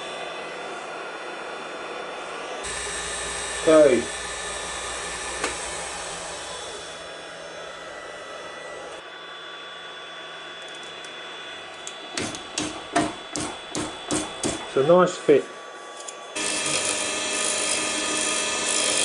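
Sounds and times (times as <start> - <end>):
wood lathe humming: 0.0 - 9.2, 10.2 - 19.0
sharp knocks and clunks: 12.2 - 14.7.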